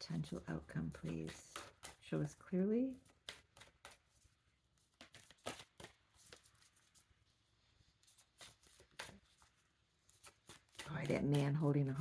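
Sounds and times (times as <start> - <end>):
deck of cards riffling: 2.9 - 12.0
sharp card snaps and taps: 3.1 - 4.2, 4.9 - 6.7, 8.4 - 9.4.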